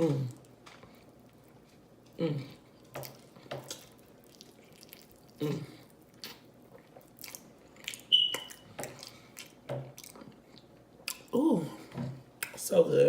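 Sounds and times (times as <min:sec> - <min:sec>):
chewing and lip-smacking: 0:00.2 - 0:11.4
short high squeak: 0:08.1 - 0:08.6.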